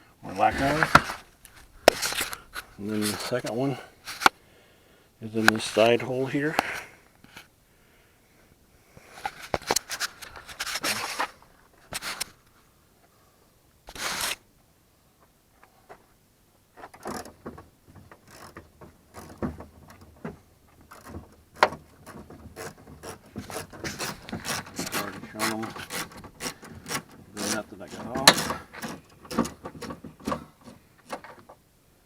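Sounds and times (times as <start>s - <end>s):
metal scrapes: 0.3s - 4.3s, 22.6s - 29.4s.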